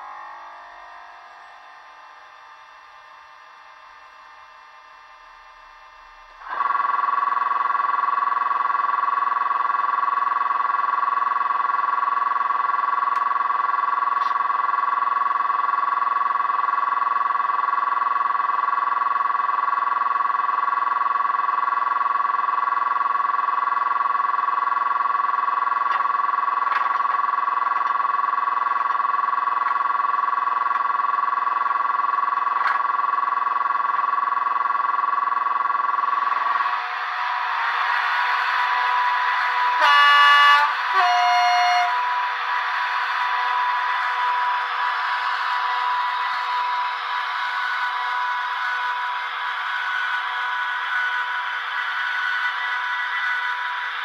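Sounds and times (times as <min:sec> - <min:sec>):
high electric whine: 0:00.0 - 0:54.0.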